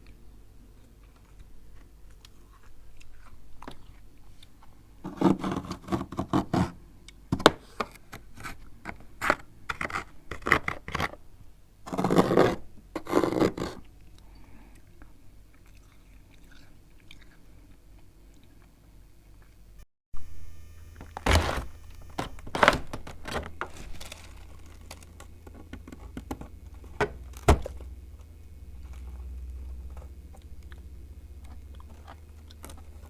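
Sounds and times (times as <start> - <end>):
chewing ice crunches: 0.8 - 4.6, 14.8 - 18.8, 21.0 - 33.0.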